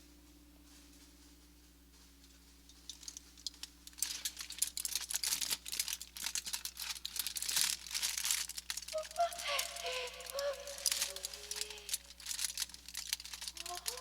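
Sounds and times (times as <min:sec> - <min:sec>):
crinkly sheet crumpling: 0:00.6 - 0:14.0.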